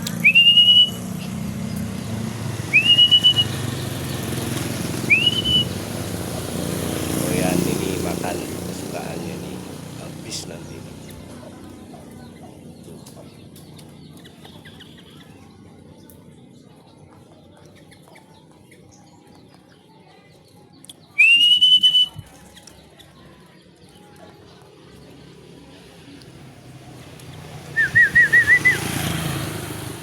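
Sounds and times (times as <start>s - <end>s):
loud rising whistle: 0.2s - 1.2s, 2.7s - 3.8s, 5.1s - 5.8s, 27.8s - 28.9s
faint chirps and clicks: 1.7s - 2.0s.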